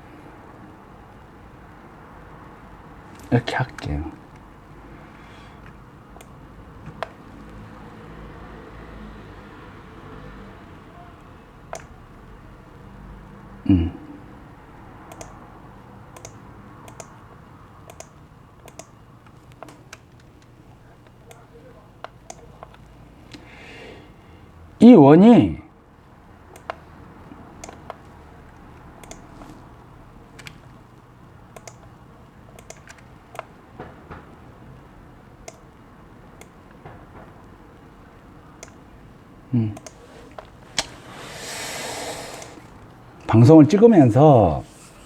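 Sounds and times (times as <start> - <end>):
keyboard and mouse clicks: 5.6 - 7.7, 11.7 - 12.0, 15.1 - 15.4, 16.1 - 17.2, 17.8 - 23.5, 26.5 - 26.8, 27.6 - 29.7, 30.3 - 30.8, 31.5 - 34.2, 35.4 - 35.8, 36.4 - 37.3, 38.6 - 38.8, 39.7 - 42.9.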